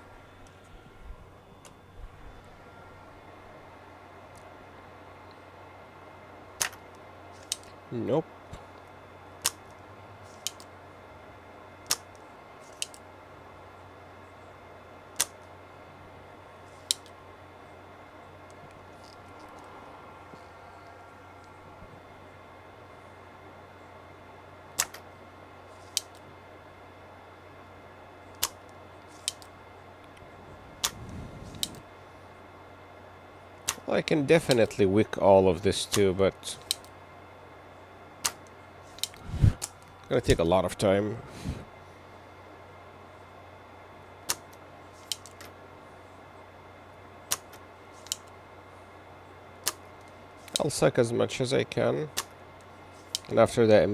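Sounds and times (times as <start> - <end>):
electrical hum: 0.0 - 53.9
desoldering pump snaps: 6.6 - 7.8, 8.5 - 10.8, 11.8 - 13.1, 15.1 - 15.6, 16.7 - 17.2, 24.7 - 25.1, 25.8 - 26.3, 28.3 - 32.0, 33.6 - 34.8, 35.6 - 37.0, 38.2 - 40.6, 44.2 - 45.6, 47.3 - 48.4, 49.6 - 50.9, 52.1 - 53.4
light clicks: 47.3 - 48.4.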